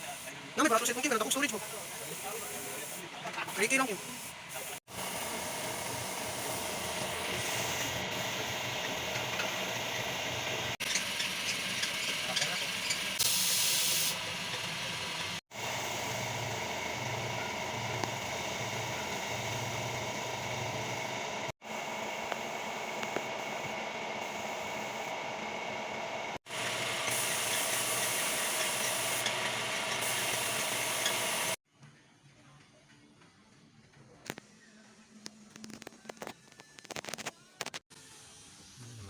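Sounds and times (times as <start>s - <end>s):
paint spraying hiss: 0.0s - 8.6s.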